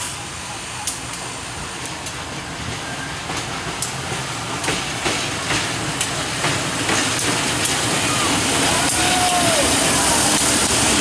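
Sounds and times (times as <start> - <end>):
train wheels clacking over rail joints: 0.8 - 11.0.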